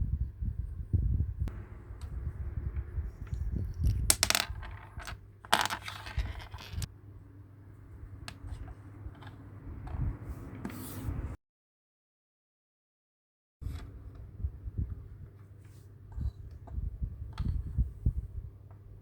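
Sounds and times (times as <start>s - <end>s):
toy pieces clattering: 3.3s - 6.9s
plastic toy pieces clicking: 3.8s - 6.9s.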